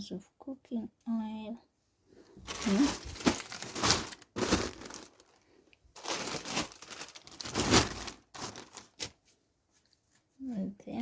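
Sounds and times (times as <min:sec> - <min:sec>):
plastic packaging crinkling: 0:02.4 - 0:09.3.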